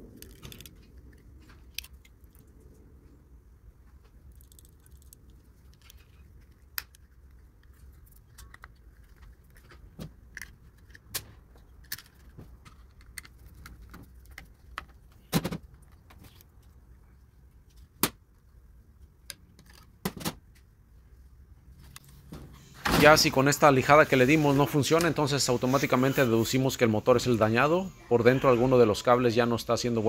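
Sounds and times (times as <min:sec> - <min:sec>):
small metal parts clicking: 0:00.0 - 0:02.5, 0:04.2 - 0:15.0.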